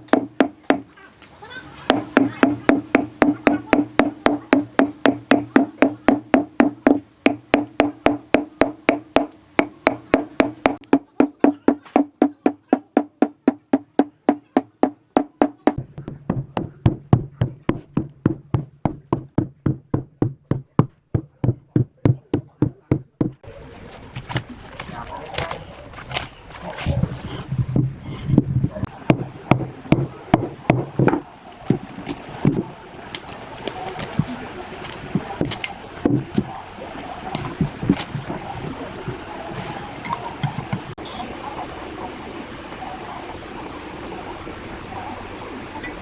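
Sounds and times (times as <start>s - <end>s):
rapid ringing blows on wood: 0.0s - 1.0s, 1.9s - 23.4s.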